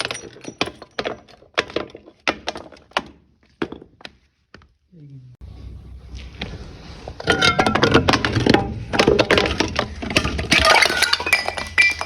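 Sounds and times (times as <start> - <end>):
glass cracking and crunching: 7.2 - 12.0
glass shards clinking: 10.1 - 12.0.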